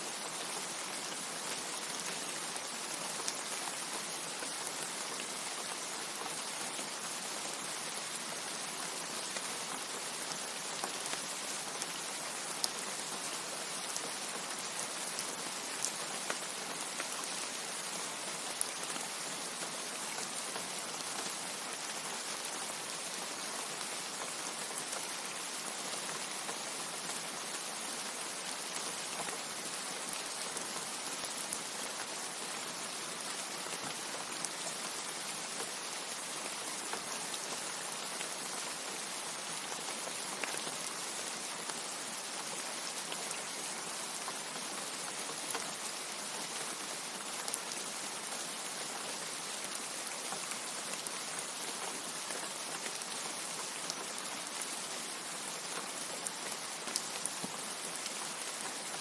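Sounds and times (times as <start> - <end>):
rain hiss: 0.0 - 59.0.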